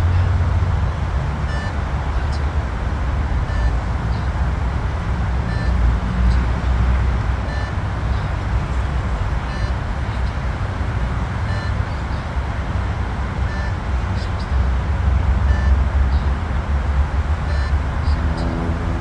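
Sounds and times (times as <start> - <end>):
steady low rumble: 0.0 - 19.0
short electronic beeps: 1.5 - 2.3, 3.5 - 4.4, 5.5 - 6.4, 7.5 - 7.8, 9.5 - 9.8, 11.5 - 11.8, 13.5 - 13.8, 15.5 - 16.3, 17.5 - 18.9.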